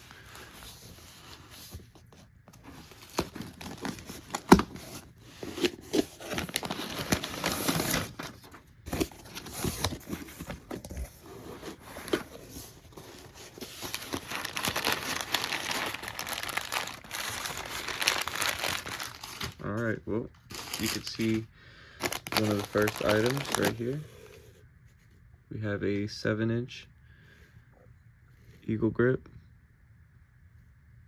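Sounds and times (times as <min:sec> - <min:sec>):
packing material crinkling: 0:00.0 - 0:21.4, 0:22.0 - 0:24.1.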